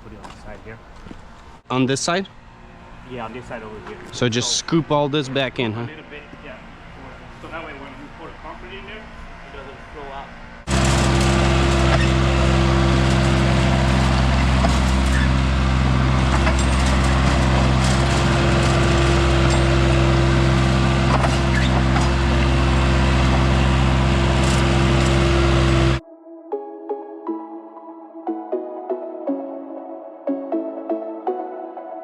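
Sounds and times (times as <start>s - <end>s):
skid steer engine running: 10.6s - 26.0s.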